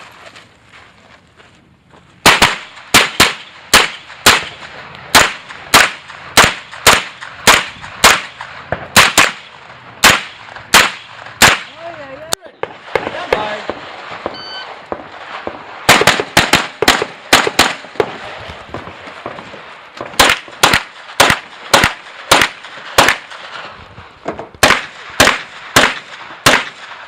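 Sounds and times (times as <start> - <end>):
pistol shots: 2.2 - 11.8, 12.6 - 18.3, 20.0 - 23.5, 24.6 - 27.0.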